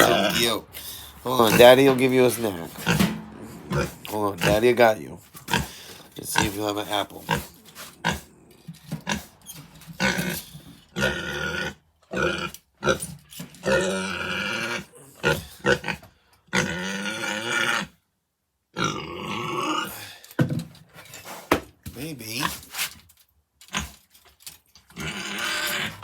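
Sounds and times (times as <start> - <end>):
pig grunting: 0.0 - 18.0, 18.7 - 20.2, 23.7 - 24.0, 24.9 - 26.0.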